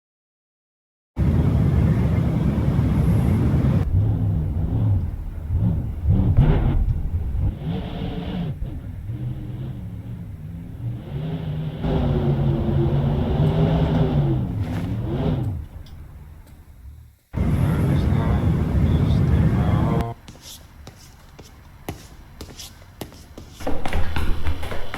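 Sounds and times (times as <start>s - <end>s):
car engine revving: 1.2s - 20.2s.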